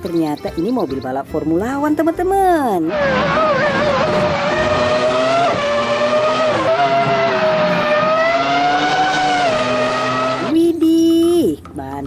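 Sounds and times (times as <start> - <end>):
race car engine at high revs: 2.8 - 10.6.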